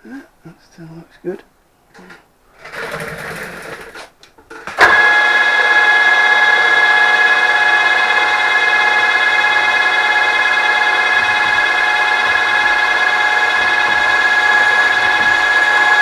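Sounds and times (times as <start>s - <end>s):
milling machine whining: 4.8s - 16.0s.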